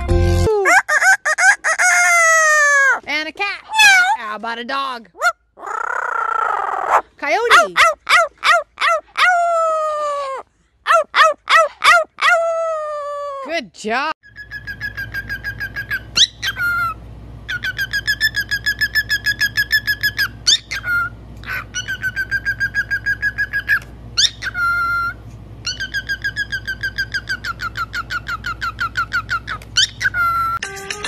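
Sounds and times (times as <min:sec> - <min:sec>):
parrot whistling trills: 0:14.2 - 0:30.6.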